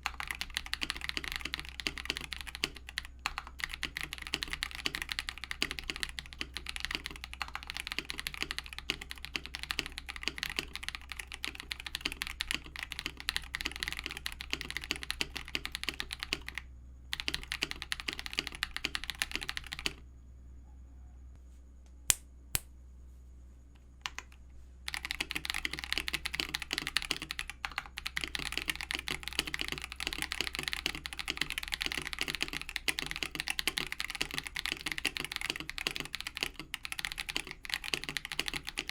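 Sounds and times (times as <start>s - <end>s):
typing on mechanical keyboard: 0.0s - 20.0s, 24.0s - 38.9s.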